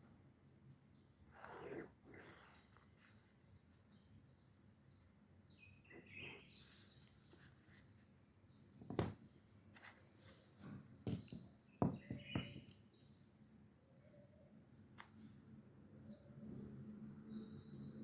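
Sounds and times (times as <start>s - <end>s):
faint squeaky scratching: 1.3s - 3.5s
knocks and taps on desk: 11.1s - 12.8s.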